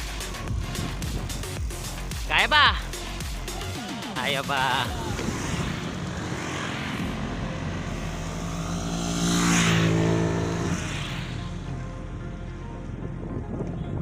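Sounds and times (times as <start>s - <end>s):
vehicle passing by: 4.6s - 12.0s.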